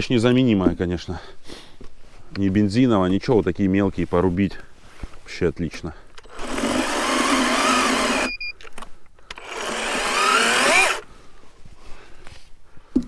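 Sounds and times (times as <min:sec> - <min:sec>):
electric chainsaw cutting wood: 0:06.3 - 0:08.4, 0:09.3 - 0:11.0.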